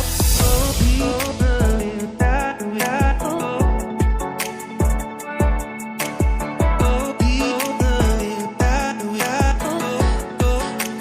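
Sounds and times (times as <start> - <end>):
pop music with bass drum: 0.0 - 11.0.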